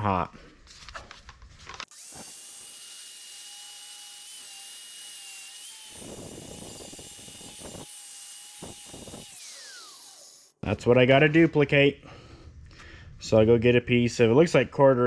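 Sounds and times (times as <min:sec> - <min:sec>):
angle grinder whining: 0:01.8 - 0:10.6
grinder grinding metal: 0:01.8 - 0:10.6.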